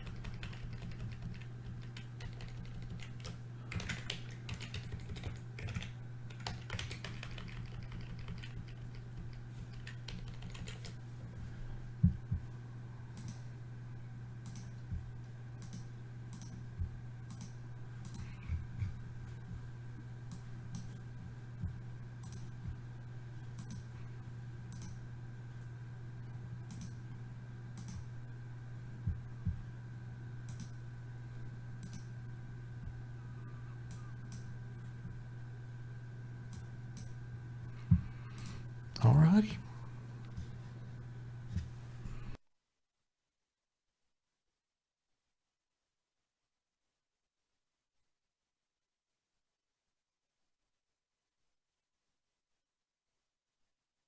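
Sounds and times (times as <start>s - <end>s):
keyboard typing: 0.0s - 11.0s, 22.2s - 22.5s, 23.6s - 23.9s.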